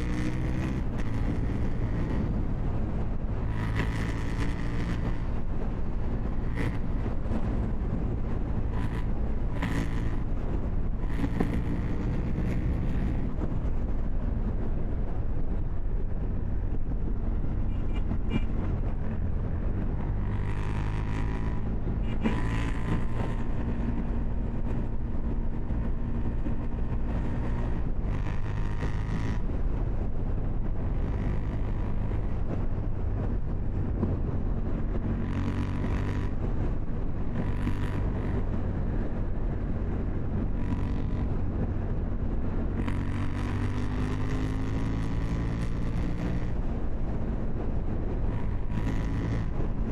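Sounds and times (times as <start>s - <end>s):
motorcycle engine running: 0.0s - 49.9s.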